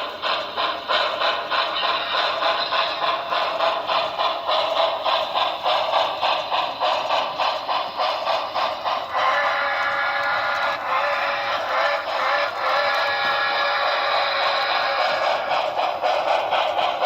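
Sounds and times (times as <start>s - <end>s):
tinny steam locomotive chuffs: 0.0s - 17.0s.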